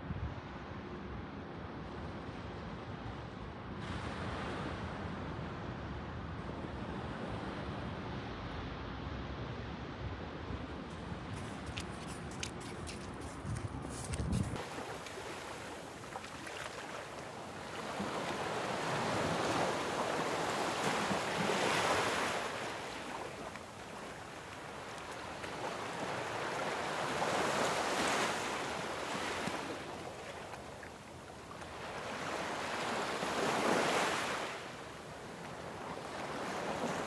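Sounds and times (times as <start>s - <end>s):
wind: 0.0s - 37.0s
brief rustle: 10.8s - 14.6s
sea waves breaking on beach: 10.8s - 37.0s.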